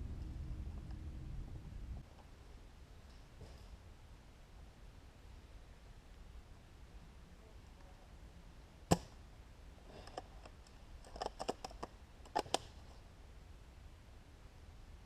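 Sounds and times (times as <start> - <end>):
sharp clicks and snaps: 10.1 - 12.8.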